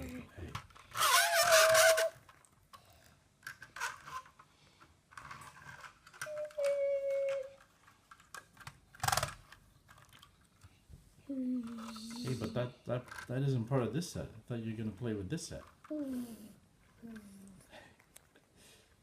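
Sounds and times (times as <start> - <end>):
plastic bricks clicking and rattling: 5.1 - 10.4, 11.6 - 13.5
held tone: 6.2 - 7.6.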